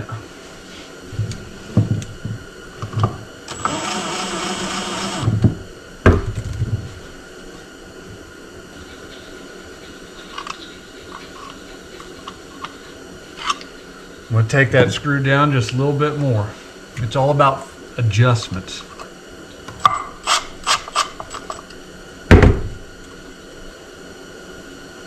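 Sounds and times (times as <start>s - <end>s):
power drill driving screw into wood: 3.5s - 5.4s.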